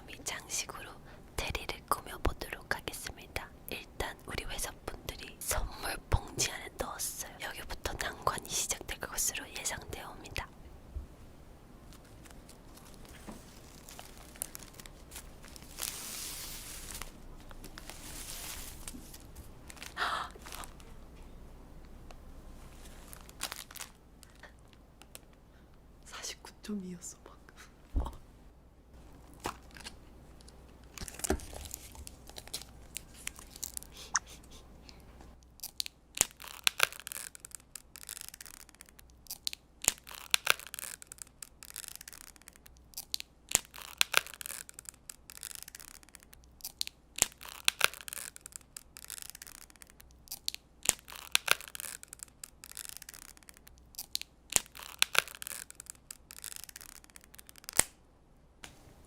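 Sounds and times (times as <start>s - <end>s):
packaging rustling and tearing: 11.9s - 20.9s, 22.8s - 25.3s, 30.8s - 34.0s, 35.6s - 57.9s
small clicks: 35.4s - 58.0s.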